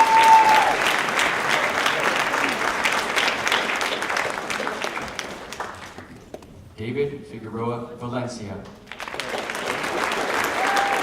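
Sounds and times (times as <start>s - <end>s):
audience applauding: 0.0s - 6.4s, 8.9s - 11.0s.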